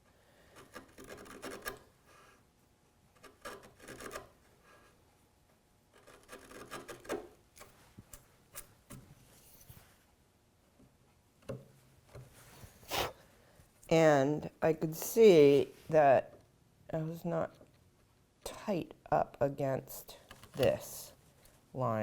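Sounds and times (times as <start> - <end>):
chisel scraping wood: 0.6 - 1.9, 3.2 - 5.0, 6.0 - 7.3.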